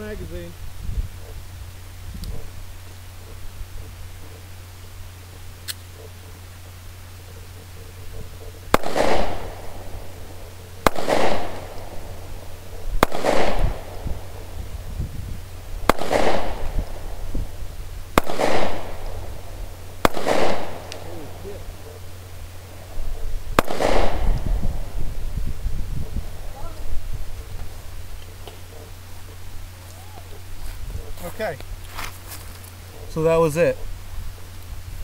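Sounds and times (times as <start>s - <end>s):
gunshot echo: 8.7s - 14.5s, 15.8s - 17.4s, 18.1s - 22.3s, 23.1s - 25.0s
pistol shots: 8.7s - 14.5s, 15.8s - 17.2s, 18.1s - 22.9s, 23.5s - 24.9s.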